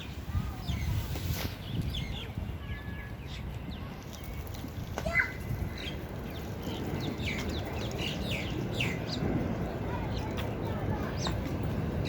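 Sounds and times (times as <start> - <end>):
small birds chirping: 0.0 - 12.0
steady low rumble: 3.6 - 12.0.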